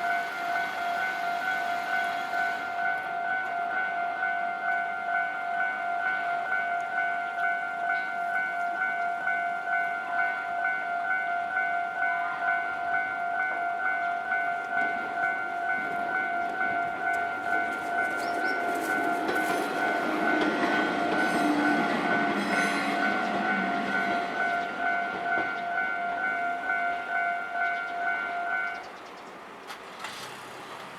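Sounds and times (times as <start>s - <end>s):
level crossing alarm ringing: 0.0s - 28.8s
train rumbling: 11.5s - 30.9s
train wheels clicking: 15.8s - 26.0s.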